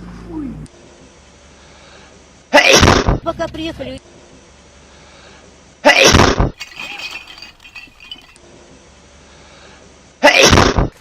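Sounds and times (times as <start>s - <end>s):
breaking glass clatter: 6.6s - 8.4s.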